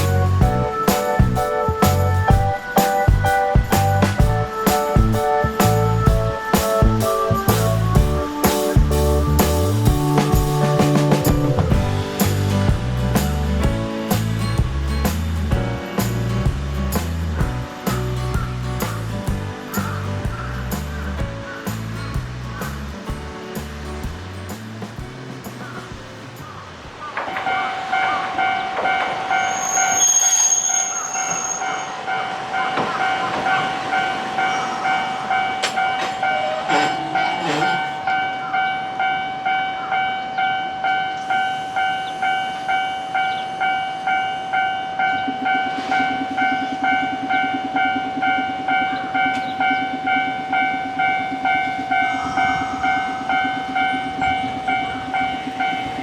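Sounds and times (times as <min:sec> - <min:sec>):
railroad crossing bell ringing: 0:27.4 - 0:56.0.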